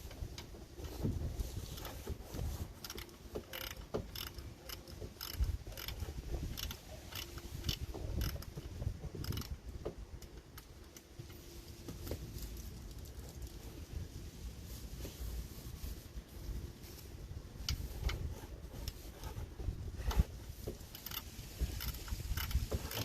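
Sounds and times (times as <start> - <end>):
hand tools clicking and knocking: 1.8 - 11.1, 20.1 - 23.0.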